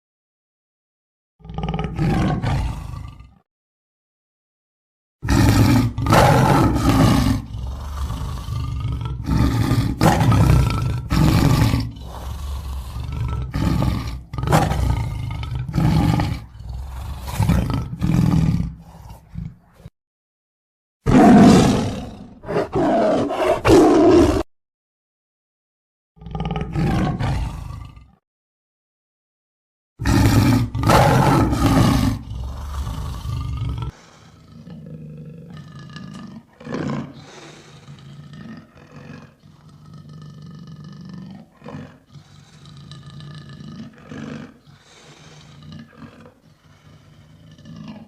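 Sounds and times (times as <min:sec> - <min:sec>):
lion roaring and grunting: 0:01.4 - 0:03.4, 0:05.2 - 0:19.9, 0:21.1 - 0:24.5, 0:26.2 - 0:28.2, 0:30.0 - 0:48.0.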